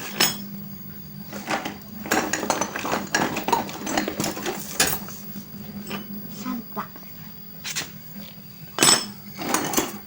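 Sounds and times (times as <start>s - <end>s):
metal tools clinking and clattering: 0.0s - 0.4s, 1.3s - 5.2s, 8.8s - 10.0s.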